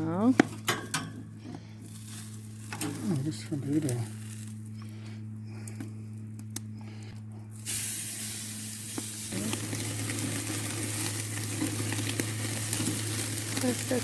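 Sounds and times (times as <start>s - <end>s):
steady low hum: 0.0s - 14.0s
chicken sizzling on a grill: 1.8s - 4.6s, 7.5s - 14.0s.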